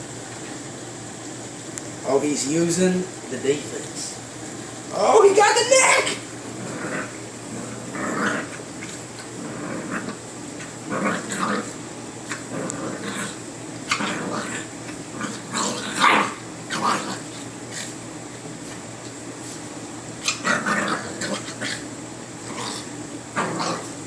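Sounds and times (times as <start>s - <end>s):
dog growling: 6.0s - 18.0s, 20.2s - 24.0s.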